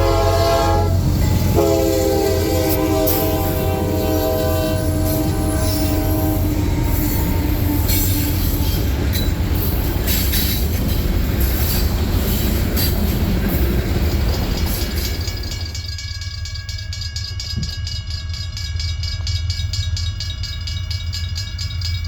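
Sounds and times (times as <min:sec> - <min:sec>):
train air horn chord: 0:00.0 - 0:08.4
rail joint clicks: 0:00.0 - 0:22.0
train engine rumble: 0:00.0 - 0:22.0.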